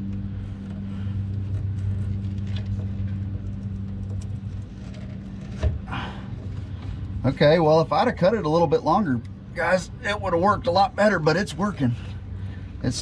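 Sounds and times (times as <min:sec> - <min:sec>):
low engine hum: 0:00.0 - 0:13.0
filter wrench scraping: 0:00.7 - 0:05.7.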